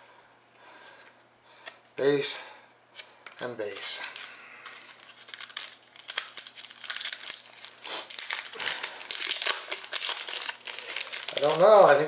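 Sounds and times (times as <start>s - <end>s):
packaging crinkling and rustling: 3.5s - 12.0s.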